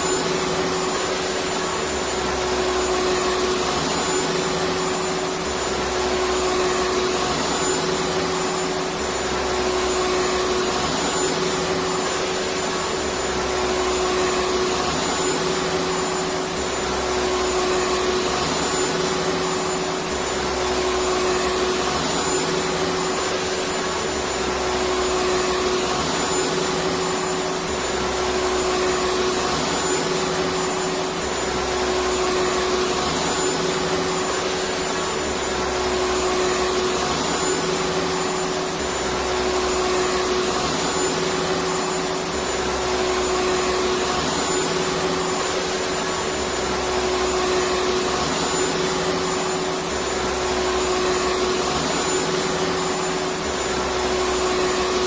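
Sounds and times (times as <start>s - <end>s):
vacuum cleaner running: 0.0s - 55.0s.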